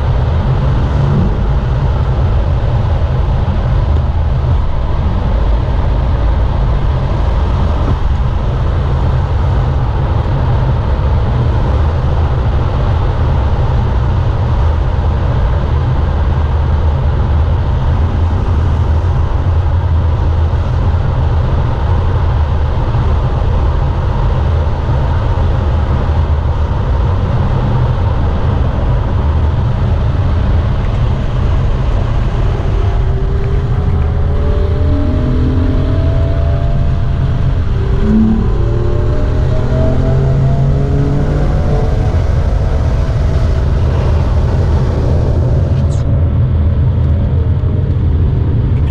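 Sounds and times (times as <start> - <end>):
car engine rumble: 0.0 - 48.9
wind and road noise: 0.0 - 48.9.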